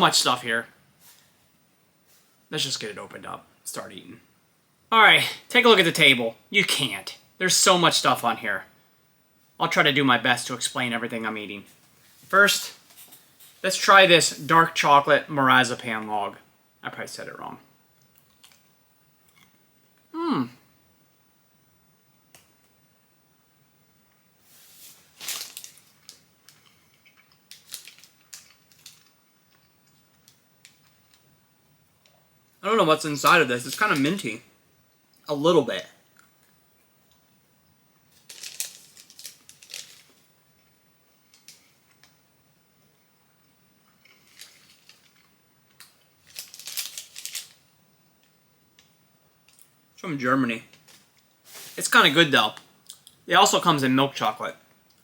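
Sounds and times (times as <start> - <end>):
snack wrapper tearing and crinkling: 18.1 - 18.7, 25.1 - 31.2, 38.1 - 40.3, 44.1 - 47.7.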